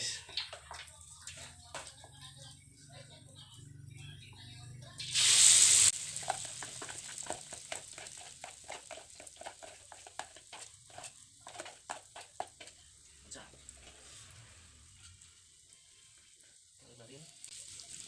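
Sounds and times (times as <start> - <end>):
frying with crackling pops: 0.0 - 2.8, 4.7 - 18.0
food sizzling in hot oil: 4.9 - 18.0.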